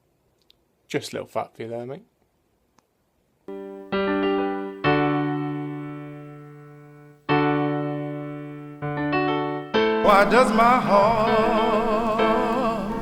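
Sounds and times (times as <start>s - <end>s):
piano chords: 3.5s - 13.0s.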